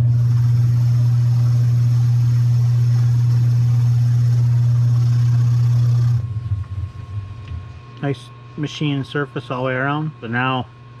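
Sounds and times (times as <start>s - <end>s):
metal lathe running: 0.0s - 6.3s.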